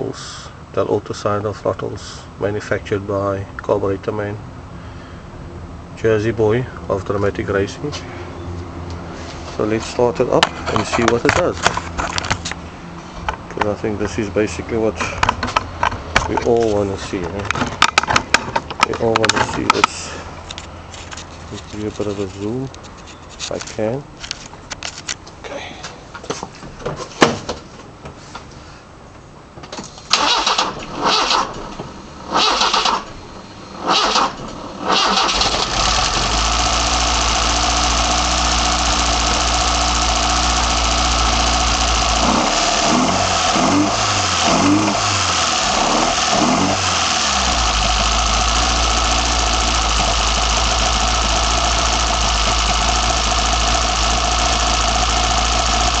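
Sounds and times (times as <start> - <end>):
engine cranking: 9.8 - 12.5, 14.9 - 21.2, 29.9 - 56.0
engine running and revving: 33.7 - 56.0.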